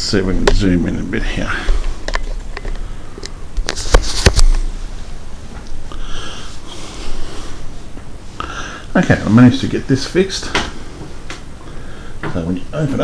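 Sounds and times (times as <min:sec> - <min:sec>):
person sniffing: 0:01.3 - 0:02.0, 0:05.9 - 0:07.7.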